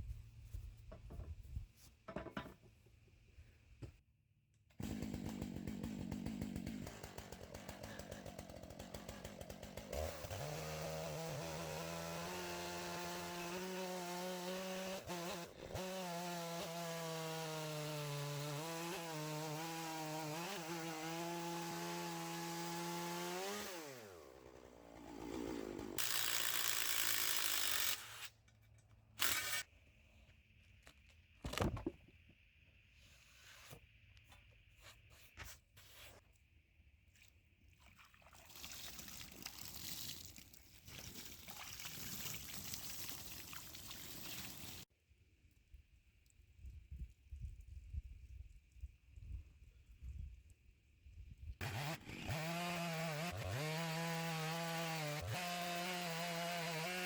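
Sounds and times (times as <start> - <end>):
chainsaw cutting log: 4.8 - 28.4, 29.2 - 29.7, 51.6 - 57.0.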